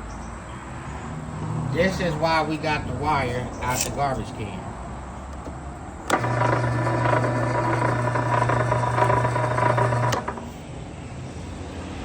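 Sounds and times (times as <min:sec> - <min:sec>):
electric motor humming: 0:06.1 - 0:10.5.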